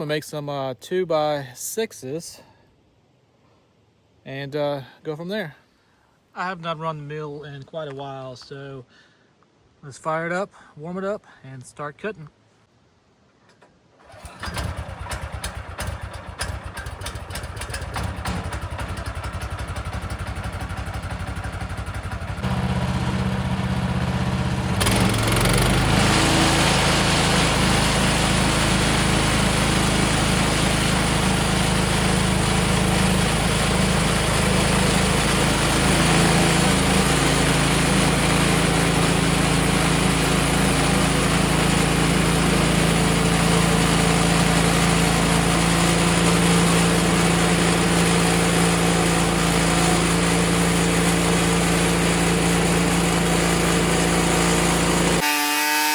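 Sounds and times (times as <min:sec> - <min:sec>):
sawmill engine running: 0:14.1 - 0:55.9.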